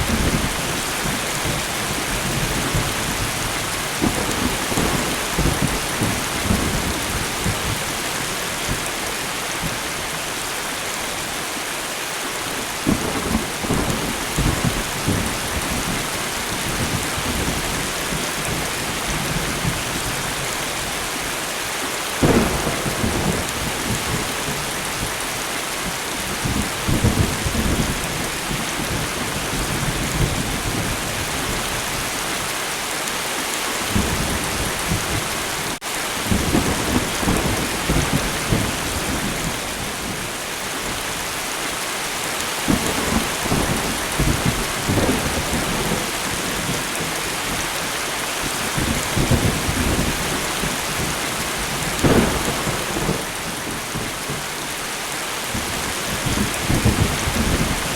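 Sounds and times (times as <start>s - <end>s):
rain hissing: 0.0s - 57.9s
thunder rumbling: 22.2s - 31.6s, 42.6s - 47.7s, 48.4s - 54.5s.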